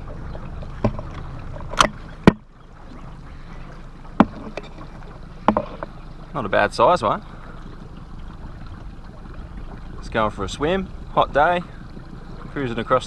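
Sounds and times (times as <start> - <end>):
sharp knocks on boat: 0.0 - 2.6, 4.1 - 6.0
boat motor hum: 0.0 - 13.0.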